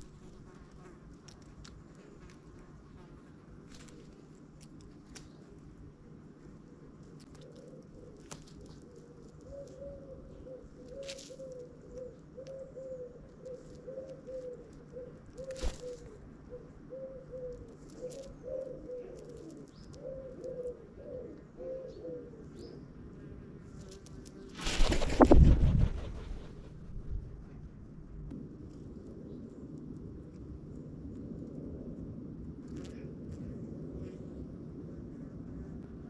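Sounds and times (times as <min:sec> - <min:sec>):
pigeon cooing: 0:07.2 - 0:22.9.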